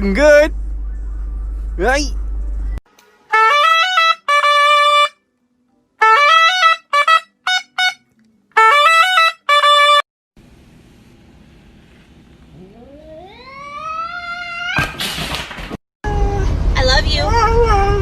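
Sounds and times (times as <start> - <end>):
trumpet playing: 3.3 - 5.2, 6.0 - 10.1.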